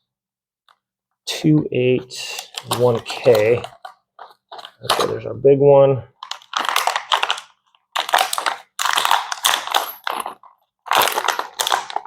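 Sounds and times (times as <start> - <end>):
plastic bag crinkling: 2.2 - 5.2, 6.2 - 12.0
screws and bolts rattling: 8.0 - 12.0.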